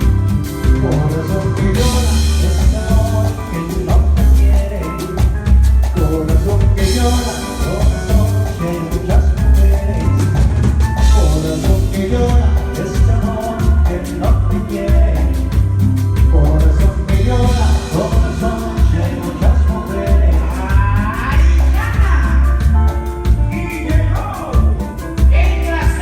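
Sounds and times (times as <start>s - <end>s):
latin dance music with bass: 0.0s - 26.0s.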